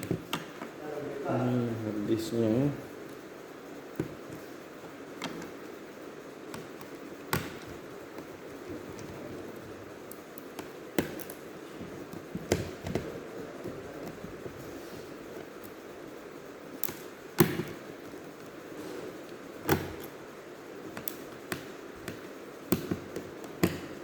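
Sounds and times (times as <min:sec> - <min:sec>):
low background hiss: 0:00.0 - 0:24.0
clicks and taps on laptop parts: 0:06.5 - 0:08.3, 0:10.1 - 0:11.4, 0:12.0 - 0:14.5, 0:16.8 - 0:18.5, 0:20.9 - 0:24.0.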